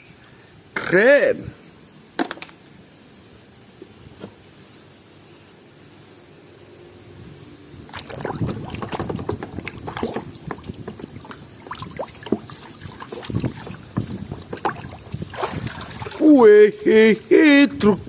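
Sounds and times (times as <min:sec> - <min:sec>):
water sloshing and splashing: 0:07.9 - 0:16.3.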